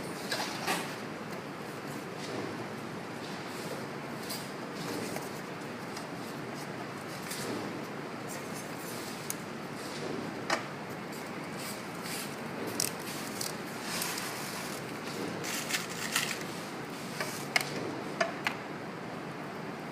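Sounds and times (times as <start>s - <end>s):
light scraping of small parts: 11.2s - 17.6s.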